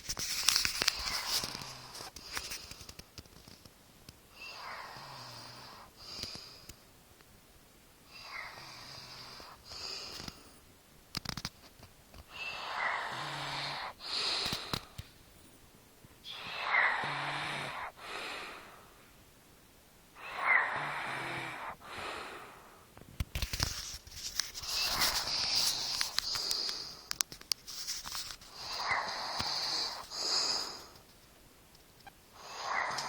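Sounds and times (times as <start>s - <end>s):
girl wheezing in sleep: 12.3s - 15.0s, 16.3s - 19.0s, 20.2s - 22.9s, 28.5s - 31.0s, 32.4s - 33.0s.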